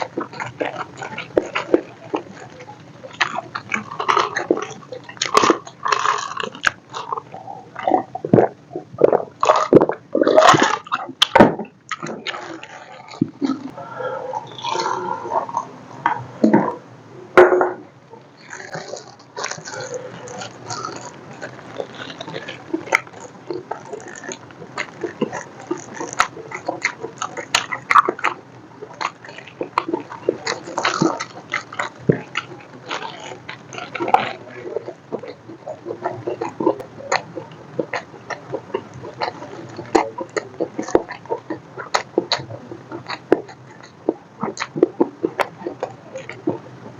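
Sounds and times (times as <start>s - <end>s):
chewing and sipping: 0.0s - 16.8s, 17.4s - 46.9s
wet mouth clicks: 9.4s - 16.8s, 18.4s - 46.8s.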